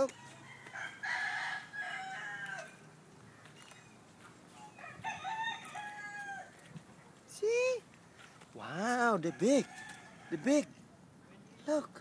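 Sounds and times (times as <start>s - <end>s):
rooster crowing: 0.1s - 2.9s, 4.6s - 6.6s, 9.2s - 10.7s.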